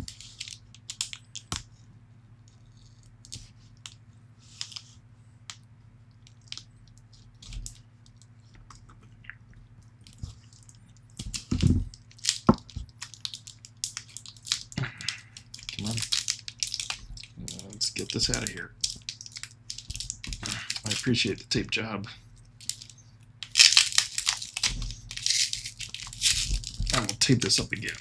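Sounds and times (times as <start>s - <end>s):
faint low hum: 0.0s - 28.0s
crinkling: 6.2s - 28.0s.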